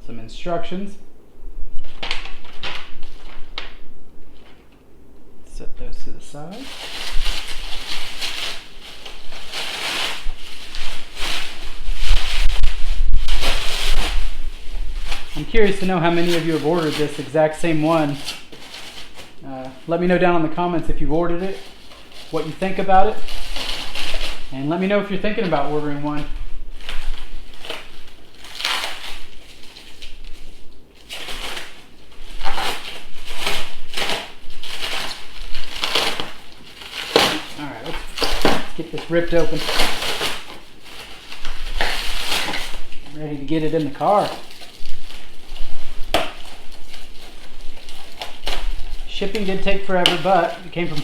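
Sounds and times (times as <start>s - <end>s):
packaging rustling: 1.7s - 4.8s, 6.4s - 51.0s.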